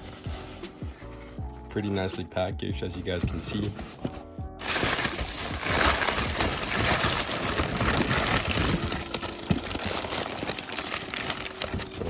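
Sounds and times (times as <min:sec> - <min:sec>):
packaging rustling and crinkling: 0:03.0 - 0:12.0.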